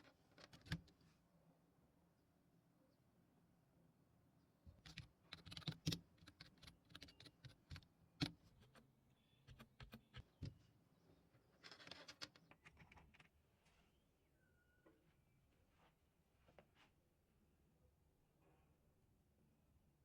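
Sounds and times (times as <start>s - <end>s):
keyboard typing clicks: 4.8s - 8.8s, 9.5s - 10.5s.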